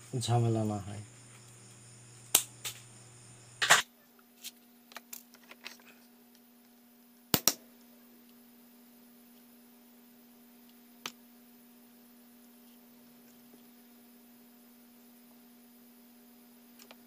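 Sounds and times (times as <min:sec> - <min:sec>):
faint steady hum: 0:00.0 - 0:17.0
sharp clicks and taps: 0:07.3 - 0:07.6.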